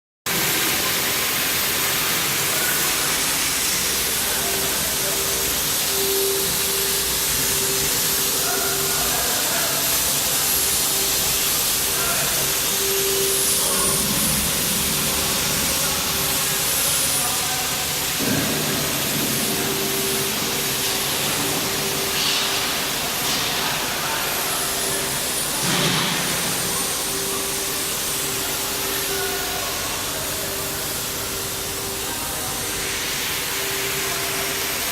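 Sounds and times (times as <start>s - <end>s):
machine hum: 0.3s - 34.9s
polishing machine hissing: 0.3s - 34.9s.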